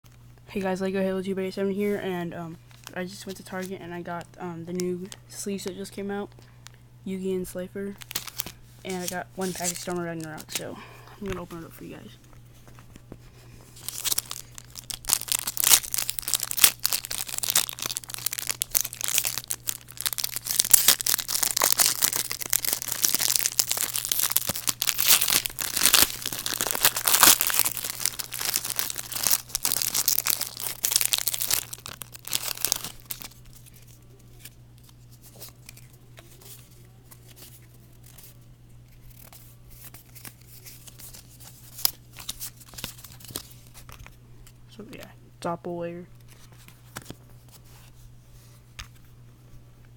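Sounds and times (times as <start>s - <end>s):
steady low hum: 0.1s - 42.2s
wrapper crinkling and tearing: 8.0s - 10.7s, 13.7s - 44.1s
cards rustling and clicking: 8.0s - 38.3s, 38.9s - 45.1s, 46.2s - 49.1s.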